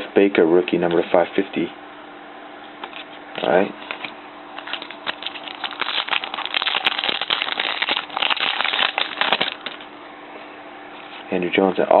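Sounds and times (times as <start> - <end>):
packaging tearing and crinkling: 3.8 - 9.9.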